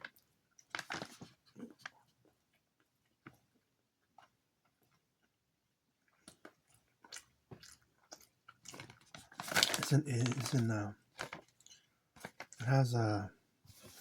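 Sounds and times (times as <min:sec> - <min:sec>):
faint clicks and rustles: 0:00.0 - 0:03.5, 0:08.5 - 0:12.6.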